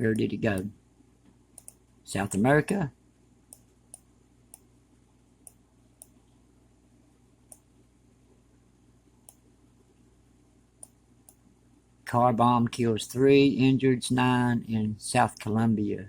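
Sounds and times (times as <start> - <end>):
computer mouse clicks: 0.1 - 1.8, 5.4 - 6.4, 7.5 - 7.7, 9.2 - 9.5.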